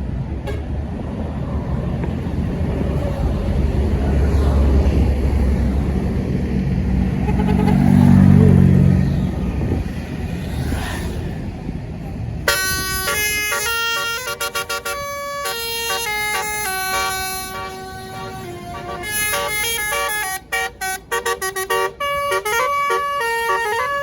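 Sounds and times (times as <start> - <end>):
heavy diesel engine rumbling: 0.0 - 24.0
multi-tone bus horn tune: 0.3 - 1.0, 7.1 - 8.5, 12.4 - 24.0.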